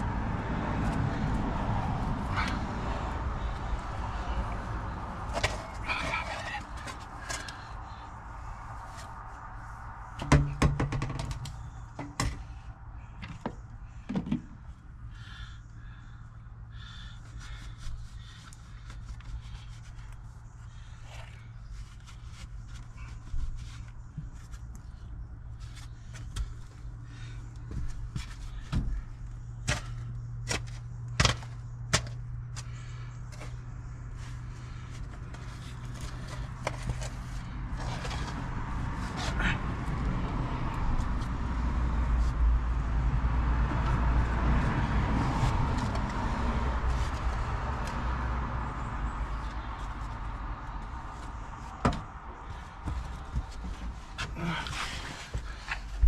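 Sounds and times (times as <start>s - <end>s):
knocks taps and scrapes: 5.2s - 8.0s.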